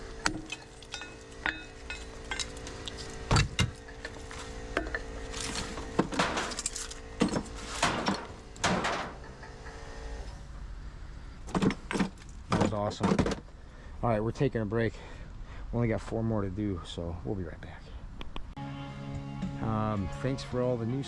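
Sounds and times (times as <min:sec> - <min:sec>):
steady hum: 0:00.0 - 0:11.8
clattering scraping metal: 0:00.2 - 0:10.2.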